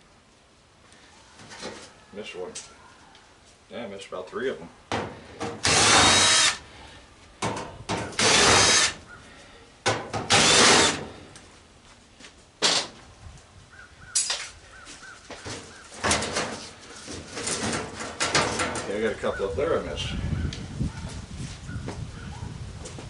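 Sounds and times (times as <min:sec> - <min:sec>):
power drill backing out screws: 0:05.4 - 0:06.6, 0:08.0 - 0:09.0, 0:10.1 - 0:11.2.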